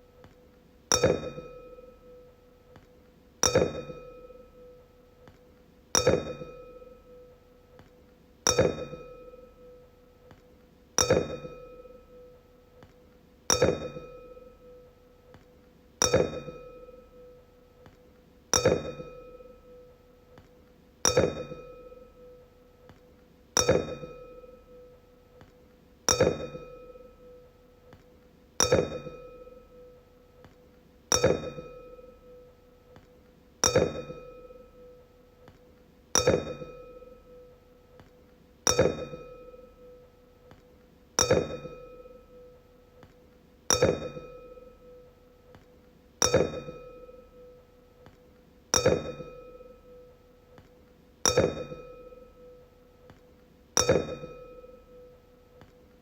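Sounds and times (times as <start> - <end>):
wine glass taps ringing: 0.9 - 1.9, 3.4 - 4.5, 8.5 - 9.5, 11.0 - 12.1, 13.5 - 14.7, 16.0 - 17.3, 21.1 - 22.3, 23.6 - 24.8, 26.1 - 27.4, 28.6 - 29.8, 31.1 - 32.2, 33.6 - 34.9, 36.2 - 37.4, 38.7 - 39.8, 41.2 - 42.4, 43.7 - 45.0, 46.2 - 47.5, 48.8 - 50.0, 51.3 - 52.6, 53.8 - 55.1.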